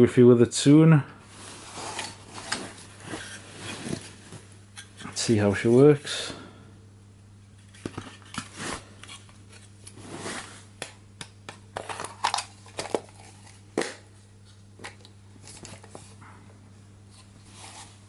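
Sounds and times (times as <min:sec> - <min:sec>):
steady low hum: 0:00.0 - 0:18.0
crinkling rustles: 0:01.3 - 0:04.6.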